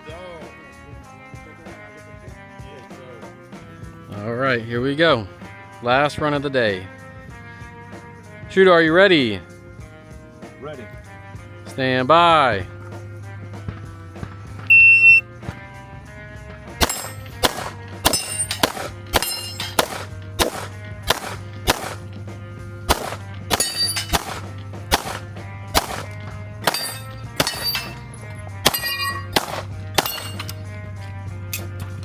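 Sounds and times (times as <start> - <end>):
steel target ringing clang: 16.8 - 22.0, 22.9 - 30.6
rapid gunfire: 16.8 - 22.3, 22.9 - 27.8, 28.6 - 30.5.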